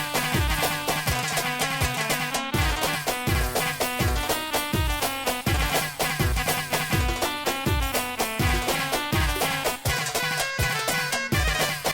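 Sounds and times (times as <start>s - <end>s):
held melody notes: 0.0s - 11.6s
deep drum beat: 2.6s - 10.8s, 11.4s - 11.8s.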